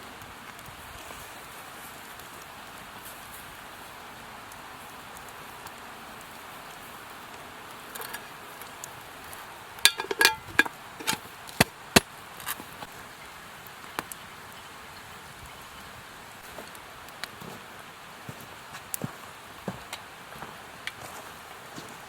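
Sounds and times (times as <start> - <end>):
steady hiss of cooking pot: 0.0 - 22.0
metallic clink: 9.9 - 11.2.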